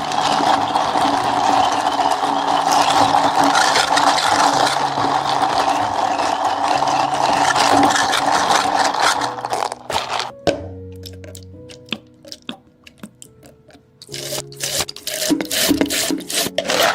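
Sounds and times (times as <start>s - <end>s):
appliance motor rattling grind: 0.0s - 10.3s, 14.0s - 16.9s
faint background music: 0.0s - 16.9s.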